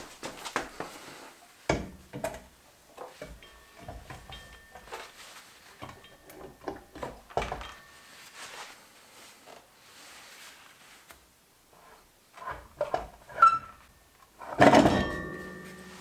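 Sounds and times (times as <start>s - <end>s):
metal clunks and knocks: 14.6s - 15.9s.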